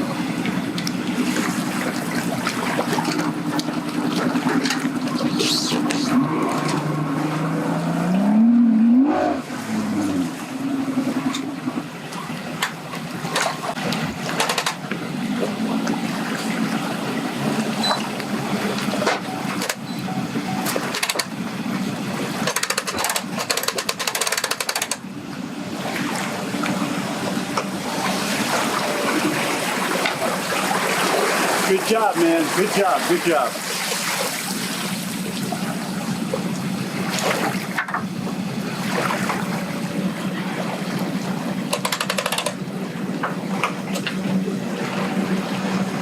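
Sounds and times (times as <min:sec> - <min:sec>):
boat motor revving: 0:00.0 - 0:46.0
water splashing: 0:00.0 - 0:46.0
wind: 0:00.0 - 0:46.0.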